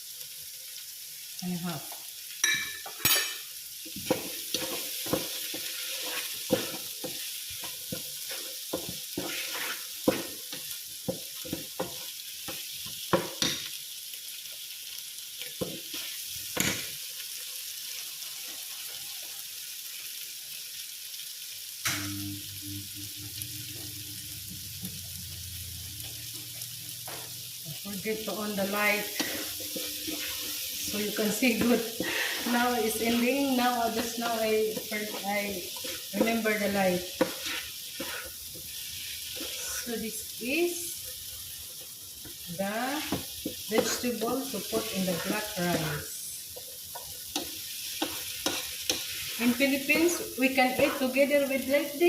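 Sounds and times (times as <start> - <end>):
vegetables sizzling in a frying pan: 0.0 - 52.0
utensil scraping a pan: 4.1 - 10.6, 28.3 - 38.7.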